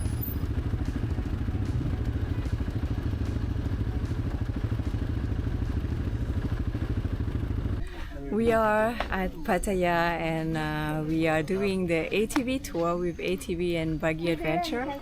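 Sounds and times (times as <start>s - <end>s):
vehicle rattle: 0.0s - 7.8s
atv engine running: 0.0s - 9.0s.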